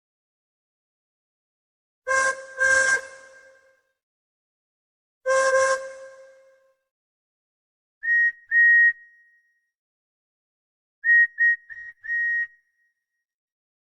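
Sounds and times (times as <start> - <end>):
steam locomotive whistle toots: 2.1 - 3.8, 5.3 - 6.7.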